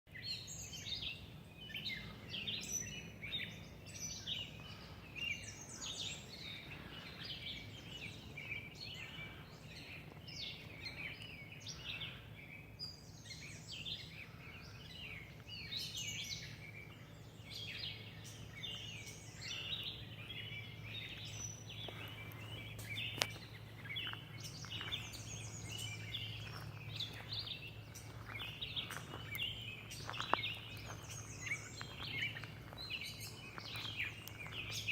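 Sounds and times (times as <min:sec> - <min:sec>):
birds chirping and singing: 0:00.1 - 0:34.9
steady low hum: 0:00.2 - 0:34.9.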